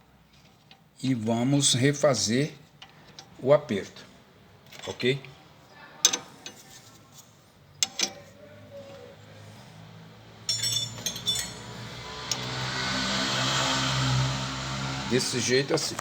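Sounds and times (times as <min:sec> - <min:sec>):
low mechanical hum with hiss: 0:00.2 - 0:12.7
metal tools clinking: 0:04.6 - 0:05.2, 0:07.8 - 0:08.4, 0:10.4 - 0:12.6.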